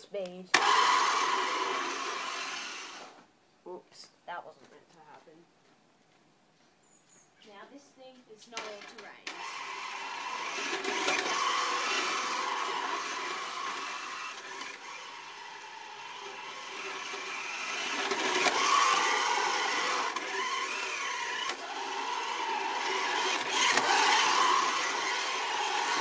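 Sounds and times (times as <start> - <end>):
toy car electric motor whining: 0.6 - 3.2, 8.6 - 26.0.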